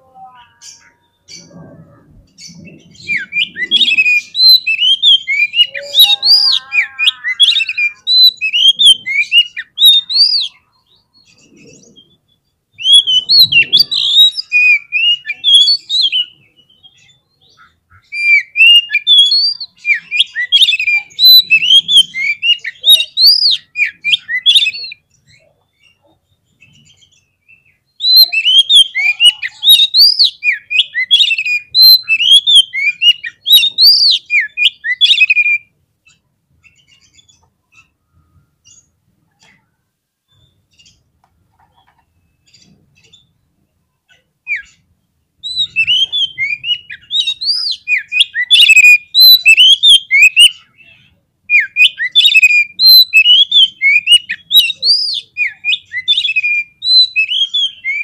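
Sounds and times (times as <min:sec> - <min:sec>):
bird chirping and whistling: 0:02.4 - 0:10.6, 0:11.2 - 0:17.2, 0:18.0 - 0:25.0, 0:26.8 - 0:36.2, 0:44.5 - 0:44.8, 0:45.4 - 0:50.7, 0:51.5 - 0:58.0.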